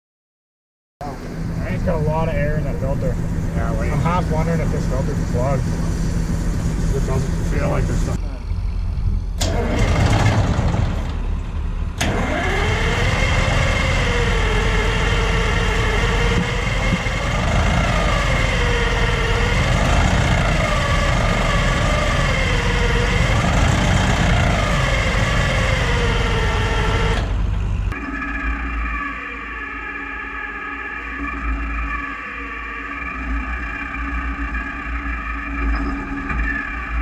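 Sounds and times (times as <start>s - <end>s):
diesel engine surging: 1.0s - 37.0s.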